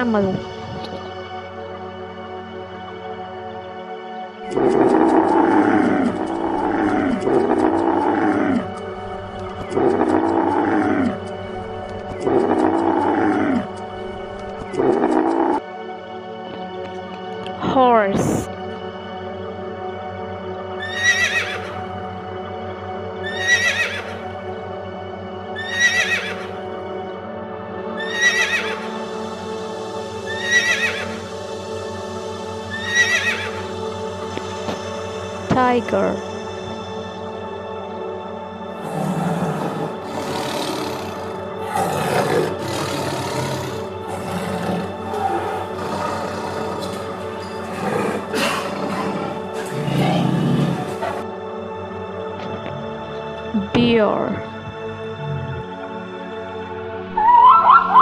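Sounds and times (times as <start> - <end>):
background music: 0.0 - 58.0
camel bellowing: 9.6 - 11.3, 12.2 - 13.7, 14.7 - 15.6, 38.8 - 51.2
horse whinnying: 20.8 - 21.8, 23.3 - 24.2, 25.6 - 26.6, 28.0 - 28.9, 30.3 - 31.2, 32.7 - 33.6, 38.8 - 51.2.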